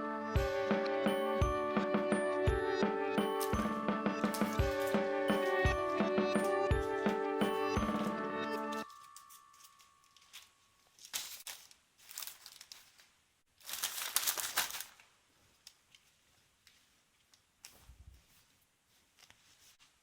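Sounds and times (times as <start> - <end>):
packaging crinkling: 8.8 - 16.1.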